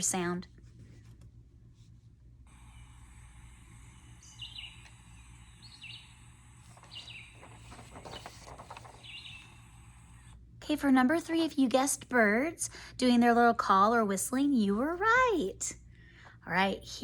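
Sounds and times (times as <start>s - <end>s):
birds chirping: 4.1s - 9.7s.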